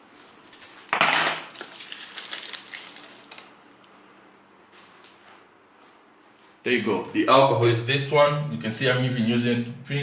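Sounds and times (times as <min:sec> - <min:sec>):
crinkling crushing burst: 0:01.4 - 0:03.8.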